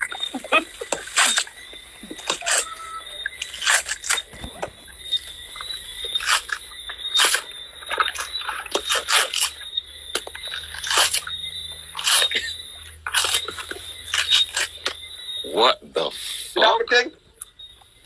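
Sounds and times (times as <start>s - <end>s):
coconut husk ripping: 0.2s - 6.2s.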